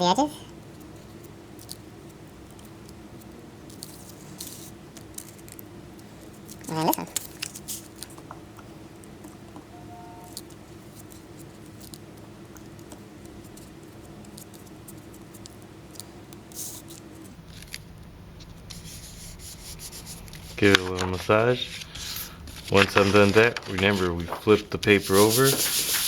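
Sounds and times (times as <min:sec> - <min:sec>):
glue brush scratching paper: 0:00.0 - 0:08.2, 0:10.2 - 0:17.3, 0:18.7 - 0:20.7, 0:24.8 - 0:26.0
steady low hum: 0:00.0 - 0:26.0.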